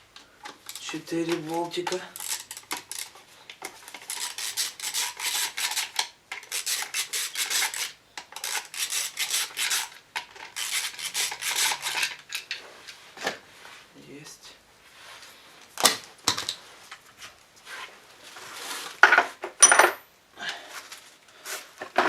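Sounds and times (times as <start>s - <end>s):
ratchet wrench clicking: 2.1s - 3.1s.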